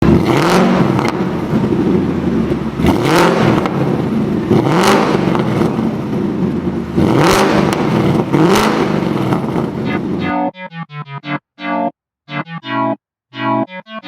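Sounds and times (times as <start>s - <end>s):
car engine idling and revving: 0.0s - 10.2s.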